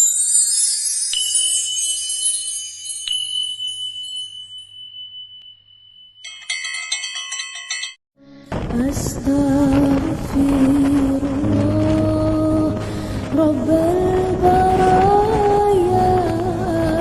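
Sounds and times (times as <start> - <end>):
bright tinkling chimes: 0.0 - 8.0
high ringing tone: 0.7 - 8.0.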